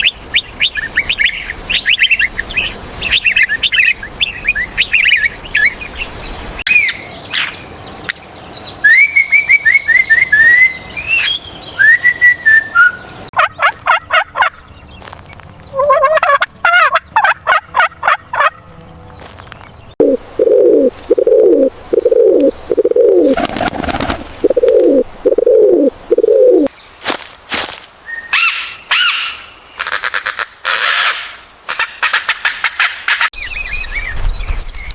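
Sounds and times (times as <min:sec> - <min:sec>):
high bird chirping: 0:00.0 - 0:13.4, 0:18.3 - 0:23.4
lower repeated bird calls: 0:00.0 - 0:23.6
fast repeated bird calls: 0:22.0 - 0:25.6, 0:28.3 - 0:33.3.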